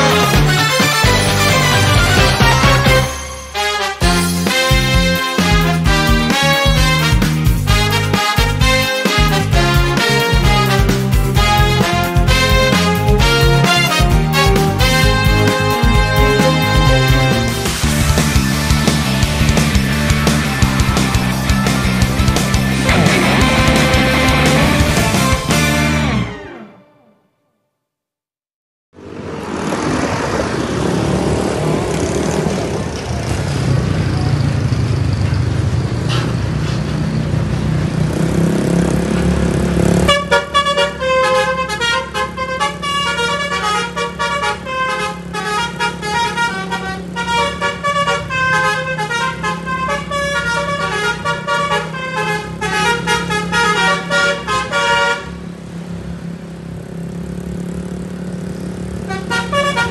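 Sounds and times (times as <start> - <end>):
musical air horn melody: 0.0 - 18.1, 20.7 - 27.3, 40.0 - 55.5, 59.0 - 59.9
bus engine and road noise: 0.0 - 26.8, 29.0 - 59.9.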